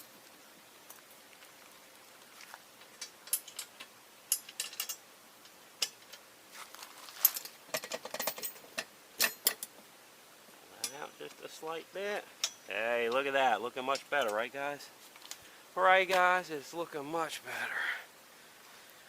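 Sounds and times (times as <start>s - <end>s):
metal parts clicking and clinking: 3.0s - 5.0s, 7.2s - 9.6s.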